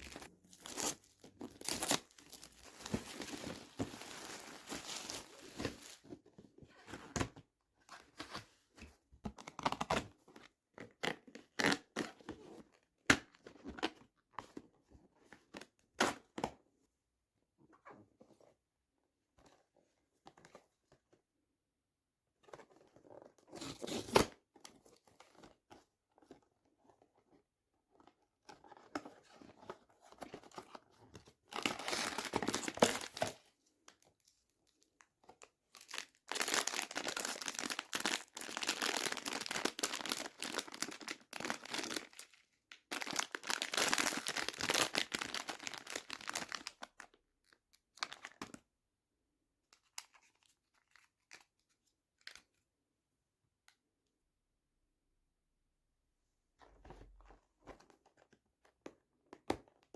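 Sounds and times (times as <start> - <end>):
packaging crinkling and tearing: 0.0 - 6.0, 35.7 - 46.9.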